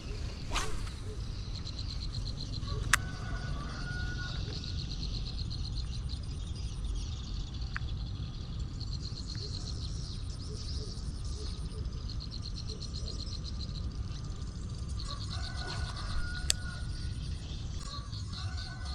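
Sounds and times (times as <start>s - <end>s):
steady low rumble: 0.0s - 12.5s.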